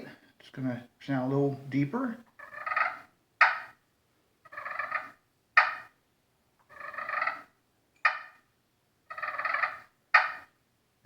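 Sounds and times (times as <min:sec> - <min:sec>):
turkey call clucks: 0:02.3 - 0:03.8, 0:04.5 - 0:06.0, 0:06.6 - 0:08.5, 0:09.1 - 0:10.6
turkey call rolling purrs: 0:02.4 - 0:03.7, 0:04.4 - 0:05.9, 0:06.7 - 0:08.4, 0:09.1 - 0:10.5.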